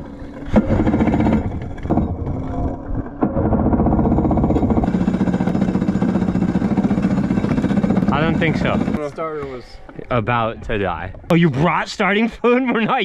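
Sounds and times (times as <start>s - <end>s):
electric starter cranking engine: 3.3s - 9.0s.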